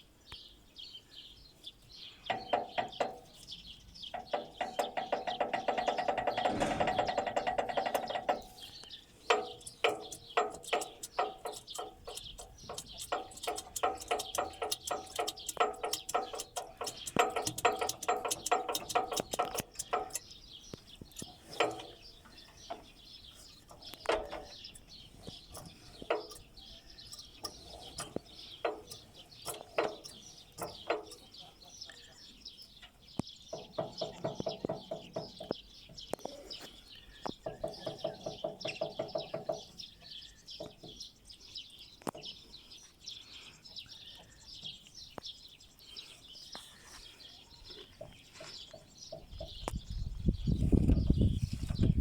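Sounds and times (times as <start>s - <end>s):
metallic knocking of engine crank: 2.3s - 8.6s, 9.3s - 20.3s, 21.1s - 22.0s, 23.6s - 31.4s, 37.5s - 39.8s.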